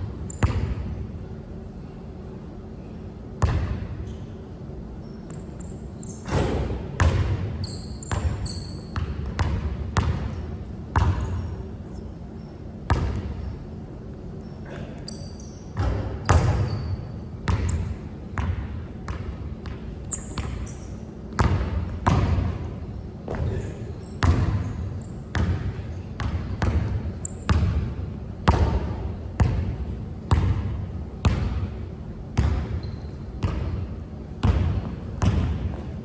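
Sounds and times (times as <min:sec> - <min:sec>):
basketball bouncing on court: 0:00.2 - 0:00.9, 0:03.4 - 0:04.2, 0:06.3 - 0:11.6, 0:12.9 - 0:13.5, 0:15.8 - 0:22.7, 0:23.3 - 0:31.8, 0:32.4 - 0:36.0.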